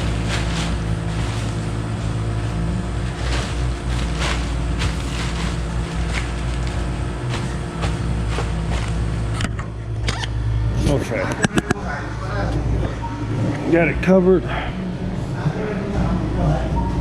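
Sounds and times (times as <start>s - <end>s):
tarp rustling: 0.0s - 9.4s
refrigeration unit humming: 0.0s - 17.0s.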